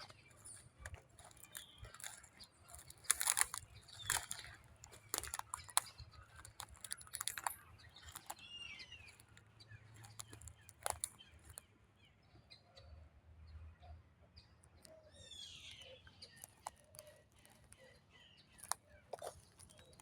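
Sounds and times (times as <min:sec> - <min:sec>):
sharp clicks and crackles: 0:00.0 - 0:08.4, 0:09.0 - 0:11.6, 0:16.3 - 0:17.9, 0:18.6 - 0:20.0
birds chirping: 0:00.0 - 0:12.9, 0:13.5 - 0:20.0.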